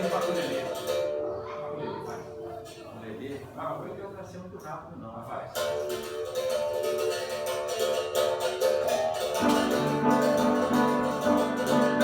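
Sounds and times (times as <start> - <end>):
shakers shaking rhythm: 0.0 - 1.5, 5.5 - 12.0
berimbau: 5.6 - 12.0
piano chords: 9.4 - 12.0.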